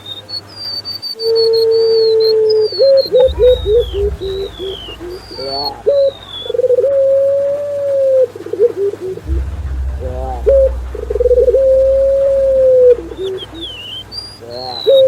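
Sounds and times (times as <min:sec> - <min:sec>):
low rumble: 0:03.2 - 0:06.9, 0:09.1 - 0:14.4.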